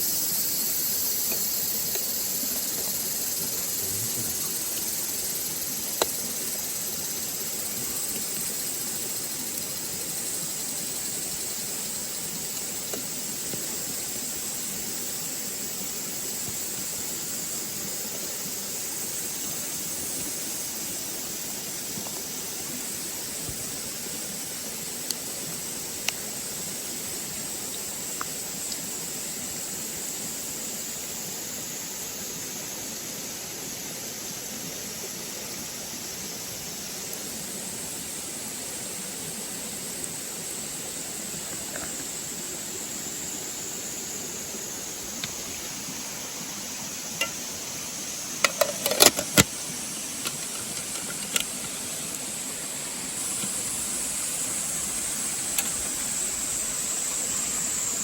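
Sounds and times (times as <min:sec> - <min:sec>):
steady rushing hiss: 0:00.0 - 0:58.0.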